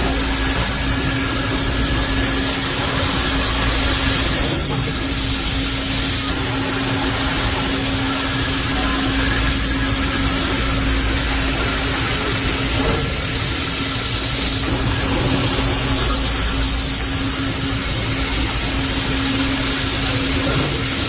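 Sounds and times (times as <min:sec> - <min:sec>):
drilling machine humming: 0:00.0 - 0:21.0
high squeals: 0:09.0 - 0:10.8, 0:14.4 - 0:17.5.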